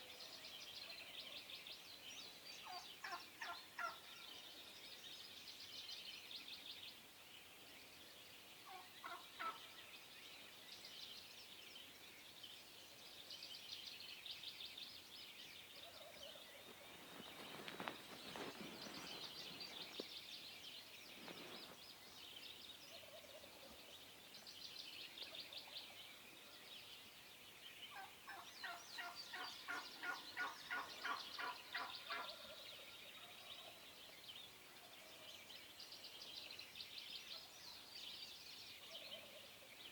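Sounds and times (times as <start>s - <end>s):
songbirds trilling: 8.0s - 39.9s.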